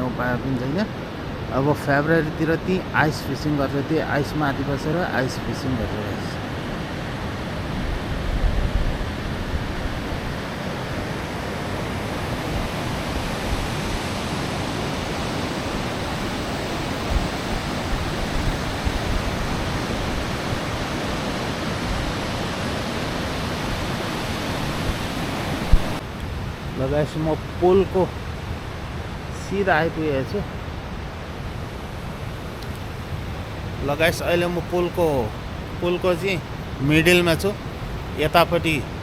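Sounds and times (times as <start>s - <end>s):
water rushing through dam outflow: 9.0s - 26.0s, 26.8s - 39.0s.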